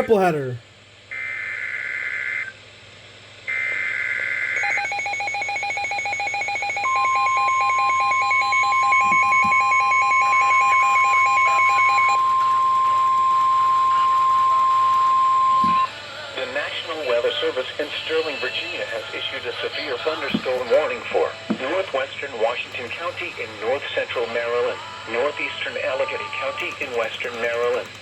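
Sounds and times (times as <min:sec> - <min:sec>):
steady single-pitch alarm tone: 0:03.5 - 0:21.9.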